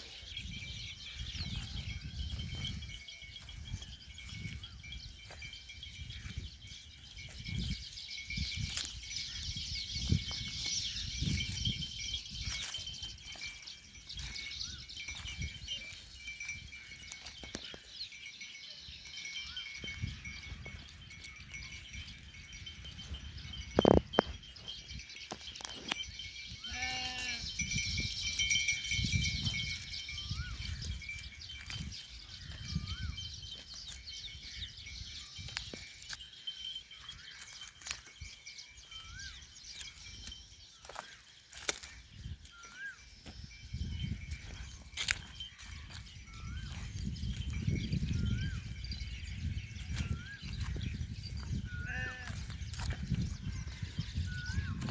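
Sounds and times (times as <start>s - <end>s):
sheep bleating: 26.6s - 27.4s, 51.8s - 52.4s.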